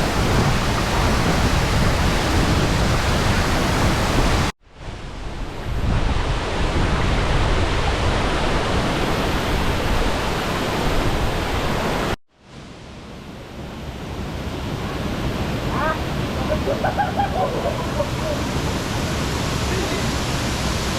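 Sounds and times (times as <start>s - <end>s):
waterfall rushing: 0.0s - 4.5s, 14.2s - 20.9s.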